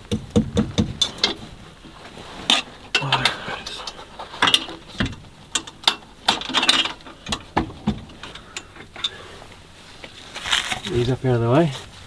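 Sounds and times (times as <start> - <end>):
metal awning fittings clicking: 0.0 - 1.4, 2.5 - 9.2.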